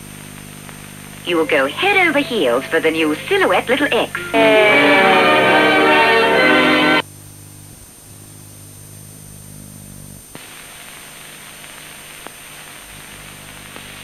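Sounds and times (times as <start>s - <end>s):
tape hiss: 0.0s - 7.0s, 10.3s - 14.0s
music: 1.2s - 7.0s
voice: 1.3s - 6.2s.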